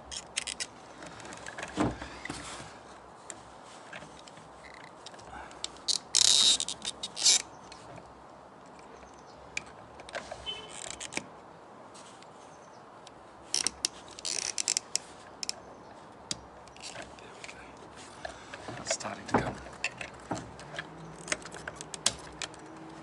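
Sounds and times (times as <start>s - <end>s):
plastic clips clicking: 18.9s - 22.9s.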